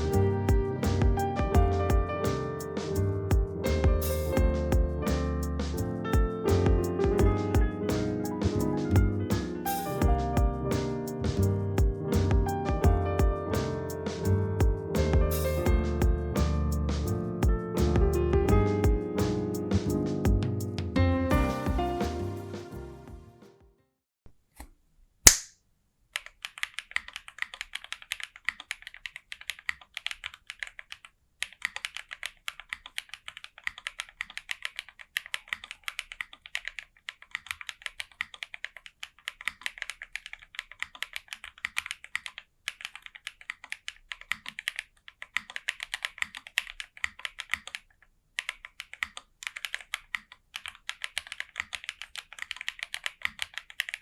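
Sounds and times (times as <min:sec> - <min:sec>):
sharp click: 0:24.6 - 0:25.6
mechanical keyboard typing: 0:26.2 - 0:54.0.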